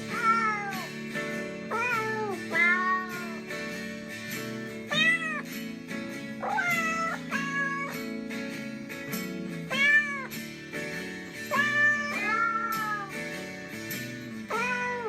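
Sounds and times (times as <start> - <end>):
cat meowing: 0.0 - 0.9, 1.7 - 3.4, 4.9 - 5.4, 6.4 - 8.0, 9.7 - 10.3, 11.5 - 13.1, 14.5 - 15.0
background music: 0.0 - 15.0.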